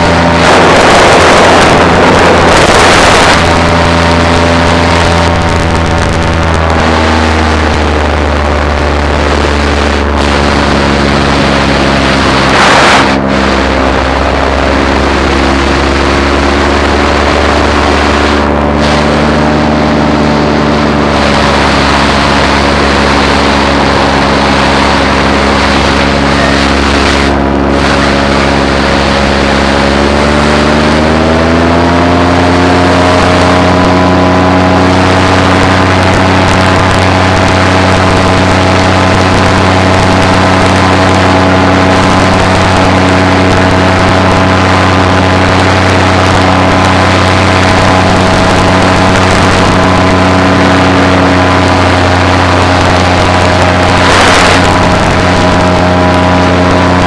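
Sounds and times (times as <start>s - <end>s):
short rush of noise: 0.0s - 30.0s, 34.7s - 57.0s
paramotor engine running: 0.0s - 57.0s.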